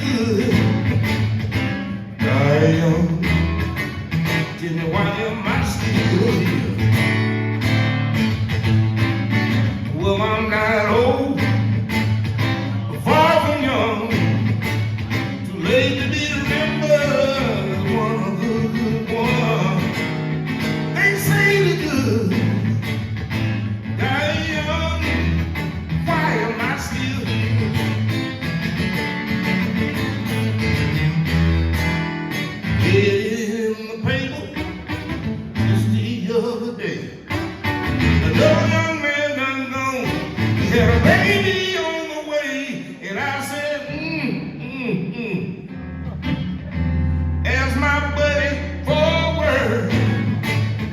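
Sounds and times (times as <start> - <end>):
man singing wordless lines: 0.0 - 1.0, 2.1 - 7.0, 9.8 - 11.9, 12.5 - 14.6, 15.2 - 23.0, 23.8 - 28.0, 32.8 - 34.8, 35.6 - 37.3, 38.1 - 45.8, 47.4 - 50.4
acoustic guitar: 0.0 - 50.9
steady bass pattern: 21.5 - 33.0, 37.4 - 38.9, 45.8 - 50.9.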